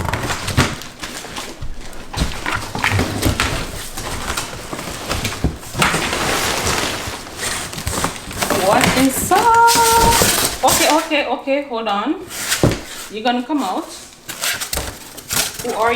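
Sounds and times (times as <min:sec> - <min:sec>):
knocks and thumps on cardboard box: 0:00.0 - 0:11.1, 0:12.5 - 0:13.0
packaging rustling: 0:00.0 - 0:11.2, 0:12.3 - 0:15.9.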